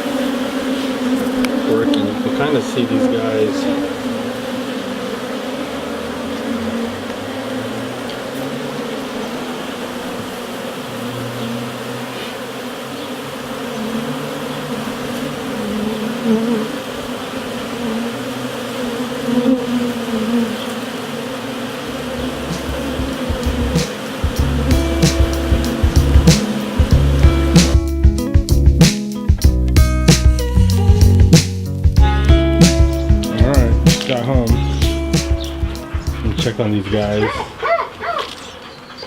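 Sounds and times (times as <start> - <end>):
honeybees buzzing: 0.0 - 39.0.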